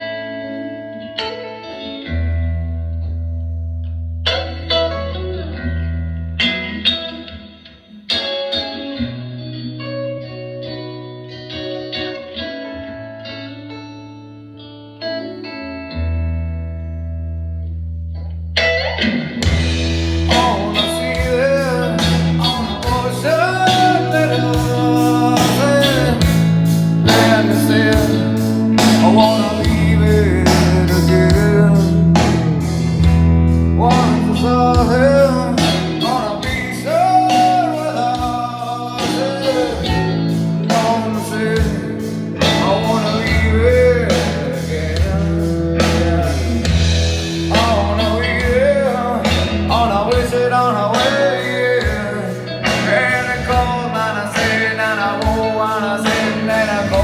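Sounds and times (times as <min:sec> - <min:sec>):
song over speakers: 0:18.6 - 0:57.0.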